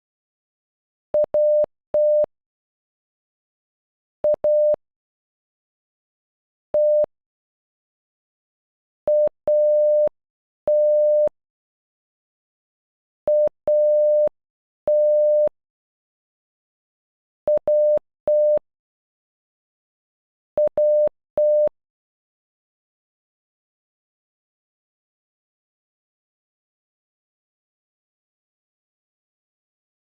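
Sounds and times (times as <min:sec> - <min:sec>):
morse code beeps: 0:01.2 - 0:02.3, 0:04.3 - 0:04.8, 0:06.8 - 0:07.1, 0:09.1 - 0:10.1, 0:10.7 - 0:11.3, 0:13.3 - 0:14.3, 0:14.9 - 0:15.5, 0:17.5 - 0:18.6, 0:20.6 - 0:21.7.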